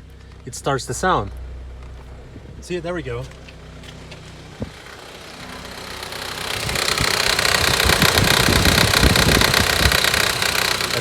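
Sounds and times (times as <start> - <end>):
harsh knocking engine noise: 0.0 - 11.0.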